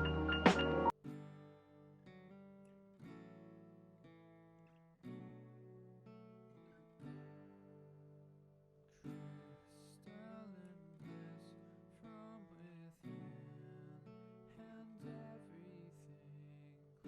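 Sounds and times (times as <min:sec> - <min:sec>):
acoustic guitar strumming: 0:00.0 - 0:04.3.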